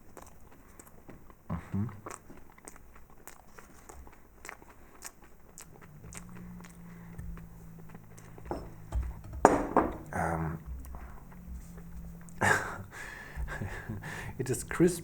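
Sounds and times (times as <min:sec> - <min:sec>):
biting into marshmallow: 0:00.0 - 0:08.5
sugar crust crunching: 0:00.0 - 0:15.0.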